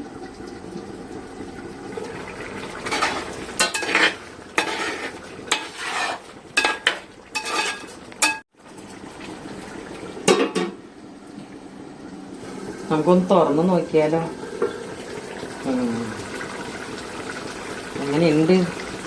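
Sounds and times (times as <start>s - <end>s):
faint simmering: 0.0s - 19.0s
metal lid clattering on pot: 2.9s - 8.4s.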